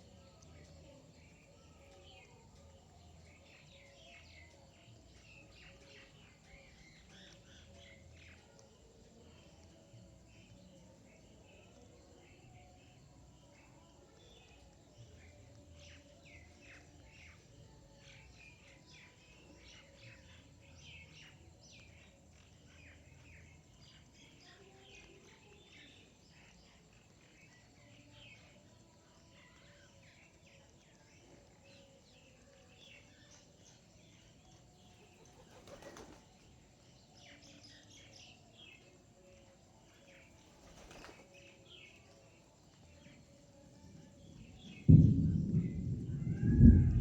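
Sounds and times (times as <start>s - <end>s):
small birds chirping: 0.0s - 47.0s
wing flaps: 35.2s - 36.4s.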